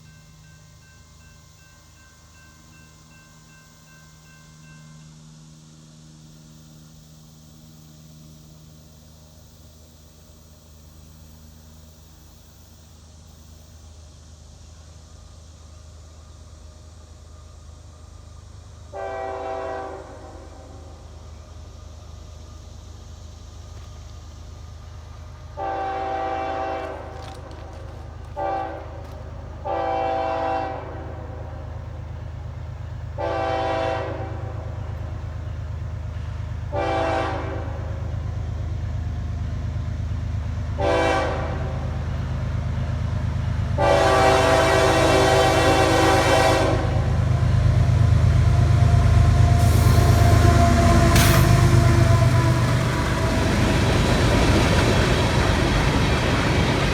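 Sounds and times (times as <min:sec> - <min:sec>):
locomotive rumble: 0:00.0 - 0:56.9
train air horn blasts: 0:18.9 - 0:21.1, 0:25.5 - 0:31.9, 0:33.1 - 0:35.2, 0:36.1 - 0:38.4, 0:40.6 - 0:42.2, 0:43.5 - 0:54.3.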